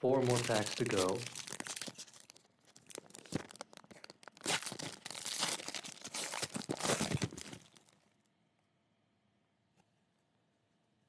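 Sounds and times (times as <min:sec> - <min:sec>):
wrapper tearing and crinkling: 0:00.0 - 0:08.0.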